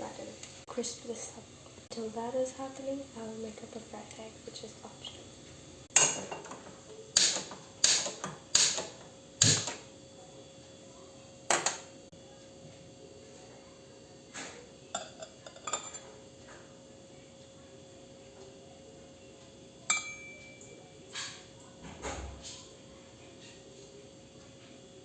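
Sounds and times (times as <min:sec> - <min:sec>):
pans and utensils clanking: 0:05.9 - 0:09.9, 0:11.5 - 0:11.9, 0:14.4 - 0:16.3, 0:19.9 - 0:24.0.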